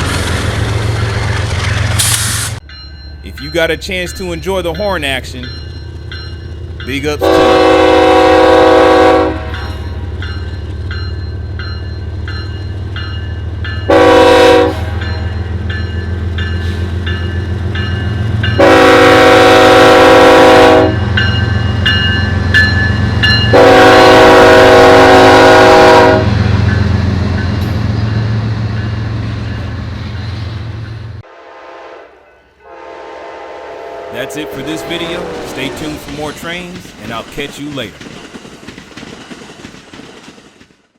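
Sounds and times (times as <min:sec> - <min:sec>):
passing train rumble: 0:00.0 - 0:40.9
locomotive air horn: 0:07.2 - 0:09.8, 0:13.9 - 0:15.1, 0:18.6 - 0:21.1, 0:23.5 - 0:26.4, 0:31.2 - 0:36.1.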